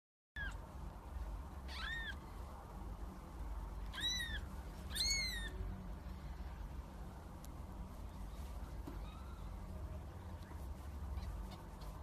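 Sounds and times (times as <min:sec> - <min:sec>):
cat meowing: 0:01.7 - 0:02.2, 0:03.9 - 0:05.6.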